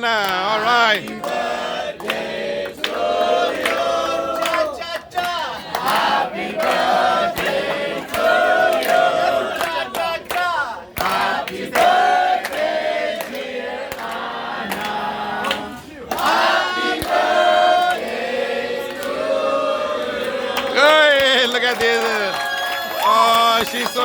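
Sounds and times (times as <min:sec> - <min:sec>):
group singing in chorus: 0:00.3 - 0:24.0.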